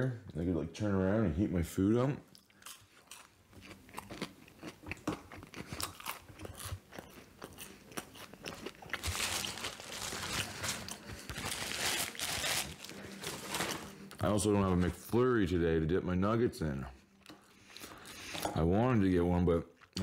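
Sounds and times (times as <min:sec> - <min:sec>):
person chewing food: 0:02.3 - 0:14.2.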